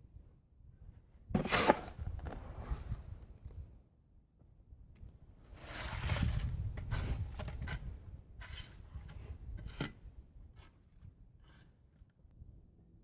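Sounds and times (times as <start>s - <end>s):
tool scraping through concrete: 1.4s - 2.0s, 5.5s - 10.8s.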